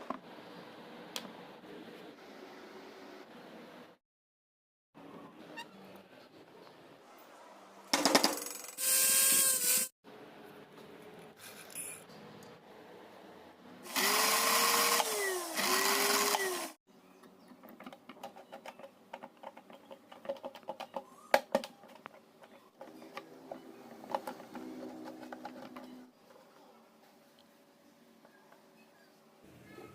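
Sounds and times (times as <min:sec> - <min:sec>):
small electric motor whirring: 0:08.6 - 0:09.9, 0:13.9 - 0:16.8.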